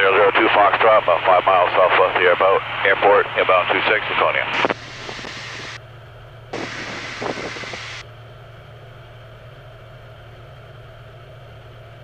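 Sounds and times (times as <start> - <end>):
faint voice over radio: 0.0 - 4.8
radio static hiss: 0.0 - 5.8, 6.5 - 8.0
piston aircraft engine drone: 0.0 - 12.0.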